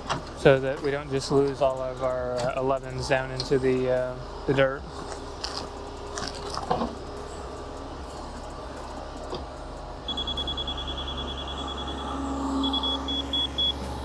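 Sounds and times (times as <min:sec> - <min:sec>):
diesel engine running: 0:00.0 - 0:14.0
high-pitched electronic beeping: 0:10.0 - 0:14.0.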